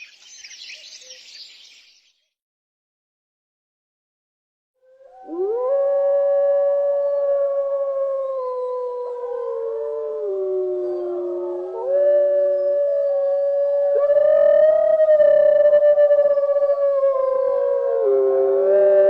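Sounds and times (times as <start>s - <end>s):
canids howling together: 5.0s - 19.0s.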